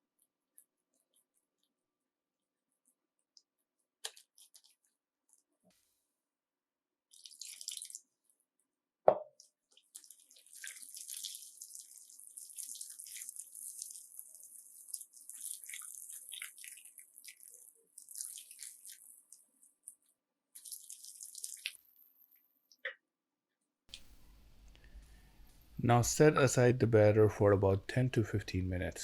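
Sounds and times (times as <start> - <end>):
batter squelching in a bowl: 0.0 - 5.7, 9.4 - 21.8.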